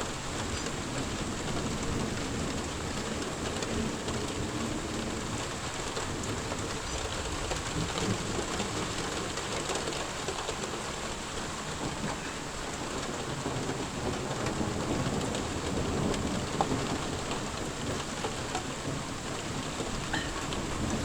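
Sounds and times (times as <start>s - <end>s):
rain falling: 0.0s - 21.0s
thunder rumbling: 12.7s - 21.0s.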